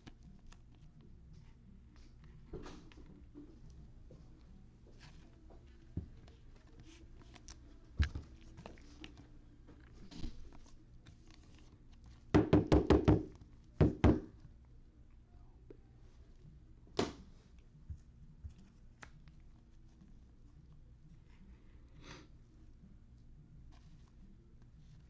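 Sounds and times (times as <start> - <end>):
cards rustling: 5.0 - 12.3
sharp knocks on a tabletop: 12.4 - 14.3.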